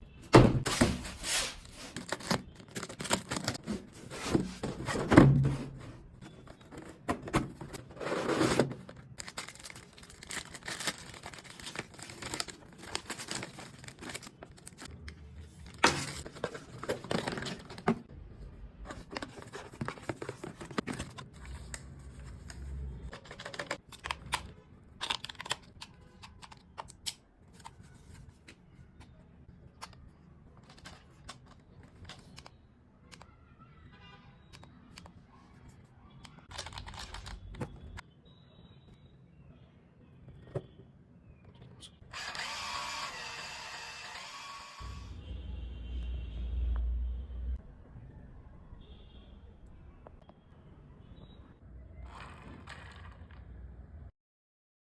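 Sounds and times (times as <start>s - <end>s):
packaging tearing and crinkling: 0.7s - 4.3s, 8.2s - 14.9s.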